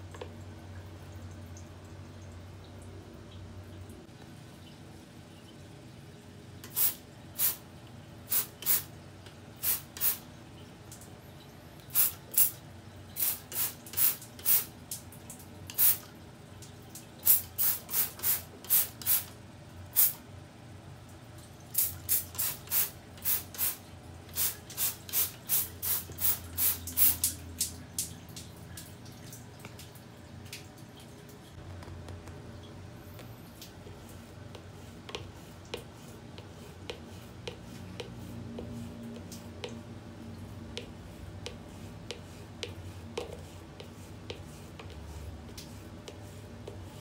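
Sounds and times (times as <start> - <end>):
hissing spray bursts: 6.7 - 7.6, 8.3 - 8.9, 9.6 - 10.2, 11.9 - 12.5, 13.2 - 14.7, 17.2 - 19.3, 20.0 - 20.2, 21.8 - 23.8, 24.4 - 27.3.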